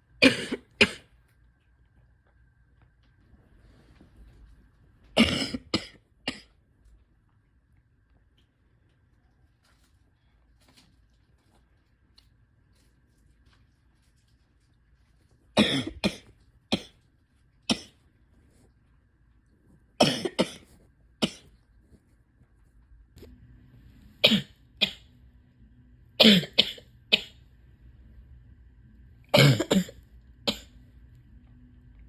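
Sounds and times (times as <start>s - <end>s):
person coughing: 0.2s - 1.1s, 5.2s - 6.5s, 15.6s - 17.0s, 17.7s - 18.0s, 20.0s - 21.5s, 24.2s - 25.1s, 26.2s - 27.4s, 29.3s - 30.7s.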